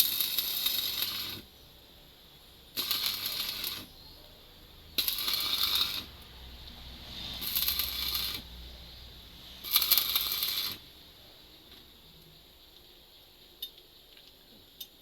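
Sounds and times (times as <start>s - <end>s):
welding arc crackling and sizzling: 0.0s - 1.7s, 2.6s - 4.0s, 4.6s - 12.4s.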